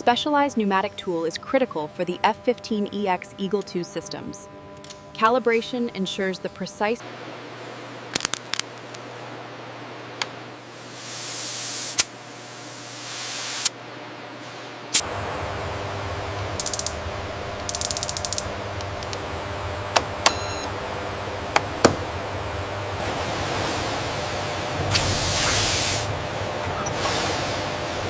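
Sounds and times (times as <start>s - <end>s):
air hiss: 10.7s - 13.7s, 24.9s - 26.2s
low steady hum: 15.0s - 28.0s
pneumatic tool ratcheting rattles: 16.6s - 17.0s, 17.7s - 18.4s.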